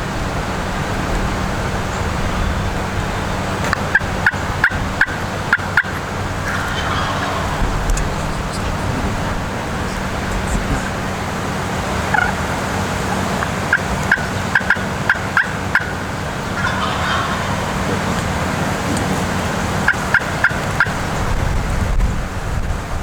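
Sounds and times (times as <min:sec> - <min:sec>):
wind noise: 0:00.0 - 0:15.0, 0:15.6 - 0:23.0
turkey gobble: 0:02.4 - 0:21.3
turkey yelps: 0:03.2 - 0:11.2, 0:12.0 - 0:21.2.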